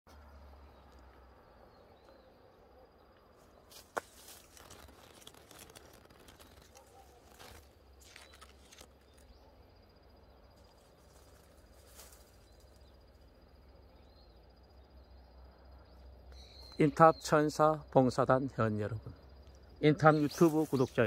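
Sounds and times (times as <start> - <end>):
brief rustling: 3.7 - 9.3.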